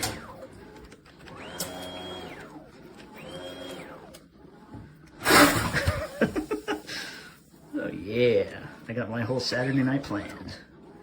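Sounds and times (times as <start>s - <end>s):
electric motor whine revving: 0.0s - 6.9s.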